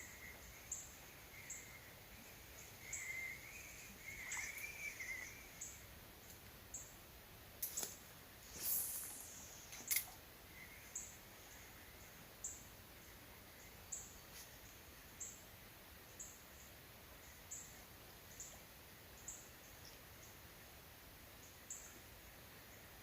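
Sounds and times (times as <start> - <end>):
small animal high chirps: 2.6 - 5.8.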